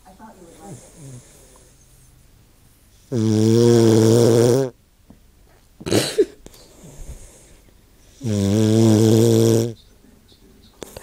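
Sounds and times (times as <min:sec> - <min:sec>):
dog snoring: 0:00.5 - 0:02.0, 0:03.1 - 0:04.8, 0:06.7 - 0:09.8.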